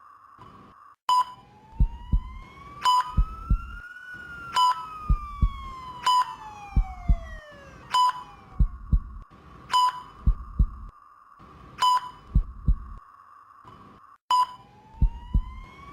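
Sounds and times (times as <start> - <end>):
rising and falling tone: 1.6 - 9.2, 14.9 - 15.9
heartbeat thump: 1.8 - 3.8, 5.0 - 5.8, 6.7 - 7.5, 8.6 - 9.3, 10.2 - 10.9, 12.3 - 13.0, 15.0 - 15.7
short high monitor beep: 14.3 - 14.7.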